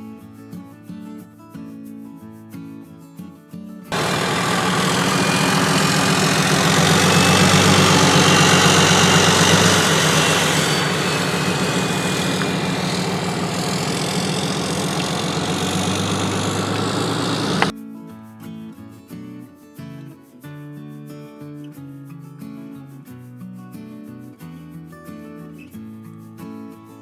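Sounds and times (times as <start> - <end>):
diesel engine running: 3.9 - 17.7.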